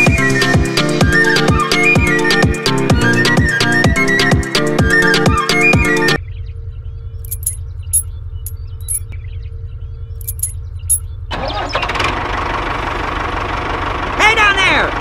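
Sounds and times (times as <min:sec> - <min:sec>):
vehicle engine idling: 0:06.3 - 0:15.0
louder fuller engine noise: 0:11.3 - 0:15.0.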